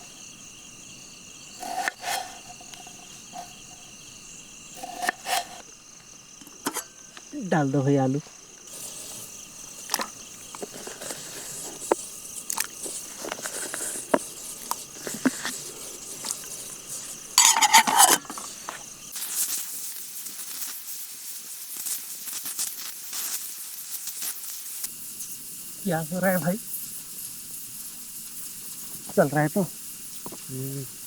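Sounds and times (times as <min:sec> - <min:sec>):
insects chirring: 0:00.0 - 0:31.0
steam hissing: 0:00.0 - 0:31.0
campfire crackling: 0:05.6 - 0:19.1.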